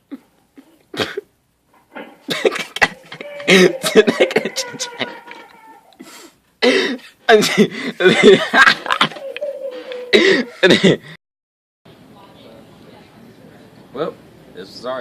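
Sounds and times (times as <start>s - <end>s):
people coughing: 0.0s - 1.3s, 2.2s - 5.3s, 6.6s - 11.1s
people laughing loudly: 2.3s - 5.6s, 7.3s - 11.0s.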